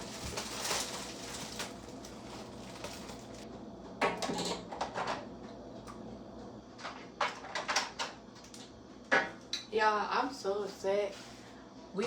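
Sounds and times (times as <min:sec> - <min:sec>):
household objects clattering: 0:00.0 - 0:03.4.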